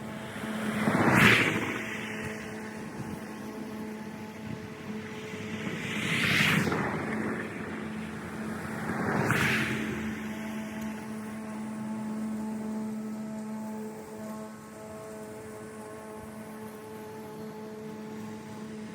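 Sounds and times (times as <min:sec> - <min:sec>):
electric motor hum: 0:00.0 - 0:18.9
vehicles passing: 0:00.0 - 0:18.9.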